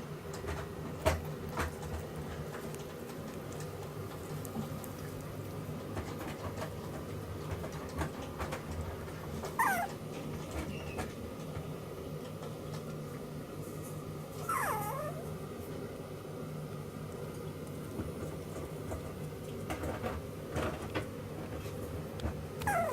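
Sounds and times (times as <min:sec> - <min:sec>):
puppy whining: 0:09.4 - 0:11.1, 0:14.3 - 0:15.4, 0:22.6 - 0:22.9.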